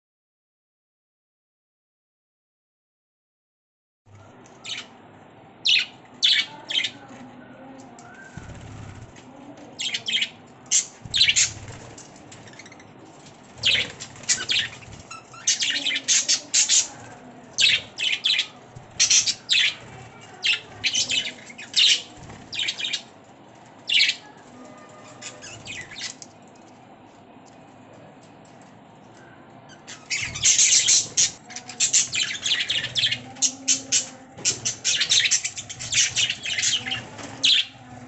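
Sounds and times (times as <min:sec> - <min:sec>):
budgerigars chirping: 0:09.8 - 0:11.7, 0:13.6 - 0:17.0, 0:17.6 - 0:19.8, 0:29.7 - 0:37.8.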